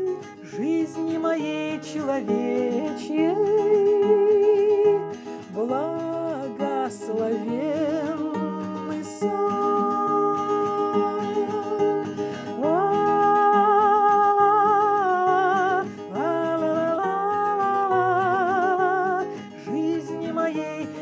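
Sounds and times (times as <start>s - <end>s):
plucked acoustic guitar: 0.0s - 21.0s
woman singing: 0.0s - 21.0s.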